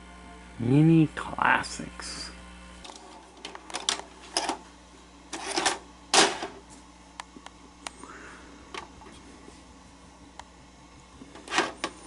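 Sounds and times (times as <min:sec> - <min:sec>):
cassette deck clicks and clunks: 0:02.8 - 0:04.6, 0:05.4 - 0:06.6.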